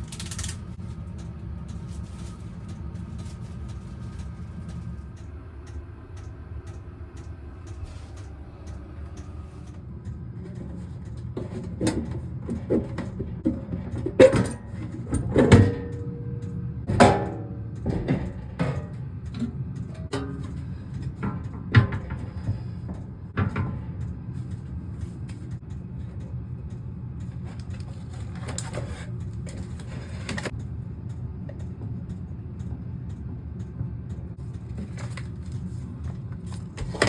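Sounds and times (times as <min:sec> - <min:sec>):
steady low hum: 0:00.0 - 0:37.0
irregular knocks and clunks: 0:16.8 - 0:23.8.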